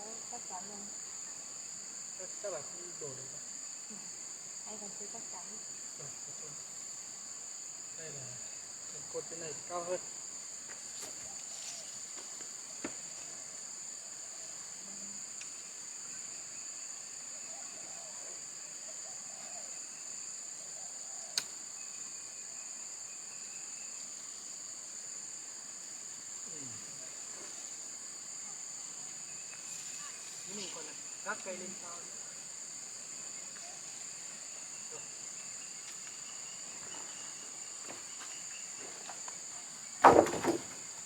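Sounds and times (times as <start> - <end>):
insects droning: 0.0 - 41.0
sharp knocks: 40.0 - 40.8.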